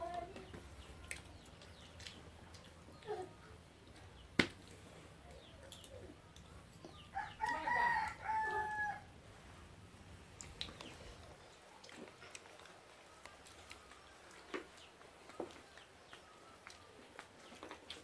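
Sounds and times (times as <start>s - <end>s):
rooster crowing: 7.1s - 9.1s.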